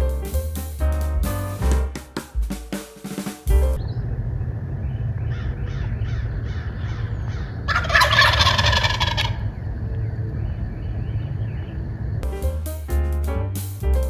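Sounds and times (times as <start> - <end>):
turkey gobbling: 7.7 - 9.4.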